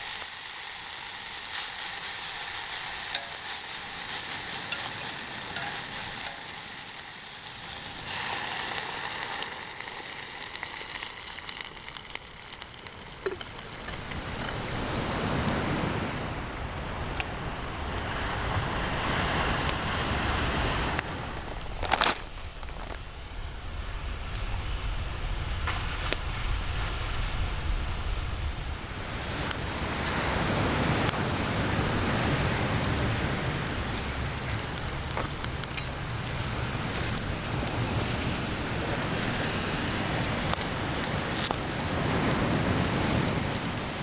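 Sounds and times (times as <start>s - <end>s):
food sizzling over campfire: 0.0s - 16.8s, 28.2s - 44.0s
wind and surf rushing: 0.0s - 21.8s, 24.6s - 44.0s.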